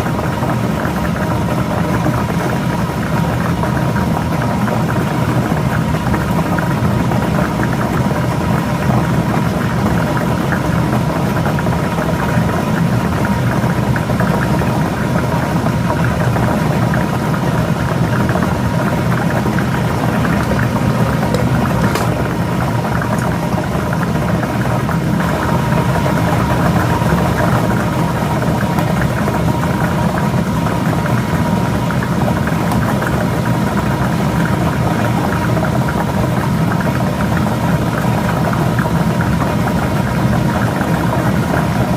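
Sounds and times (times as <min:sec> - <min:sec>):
blower motor whirring: 0:13.3 - 0:41.9.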